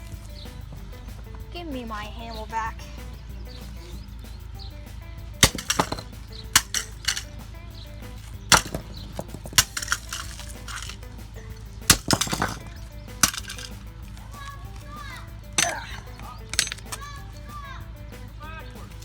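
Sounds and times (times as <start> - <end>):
background music: 0.0 - 19.0
hammer smashing alarm clock: 5.4 - 7.2, 8.5 - 13.8, 15.6 - 17.0.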